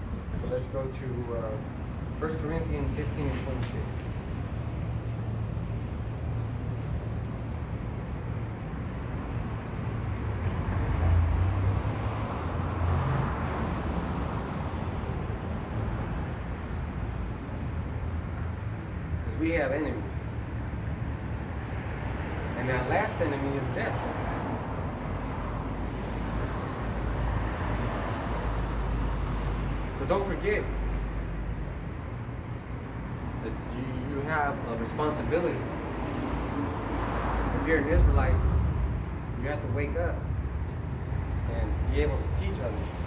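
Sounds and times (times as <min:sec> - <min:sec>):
low rumble of vehicles: 0:00.0 - 0:43.0
low rumbling noise: 0:37.4 - 0:42.3.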